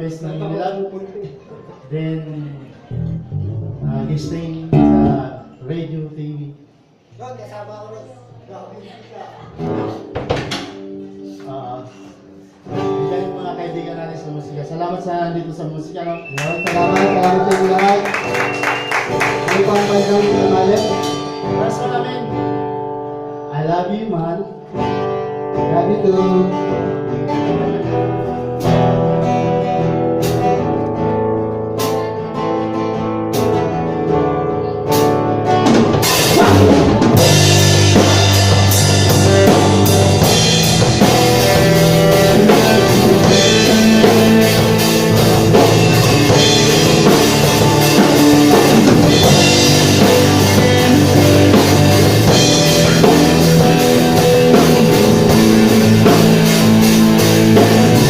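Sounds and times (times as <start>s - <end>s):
electric guitar: 2.7s - 5.6s, 9.5s - 13.7s, 16.3s - 23.6s, 24.5s - 58.0s
rock band playing: 2.9s - 5.4s, 9.6s - 11.4s, 16.2s - 23.5s, 24.6s - 58.0s
sharp drum strikes: 35.0s - 58.0s.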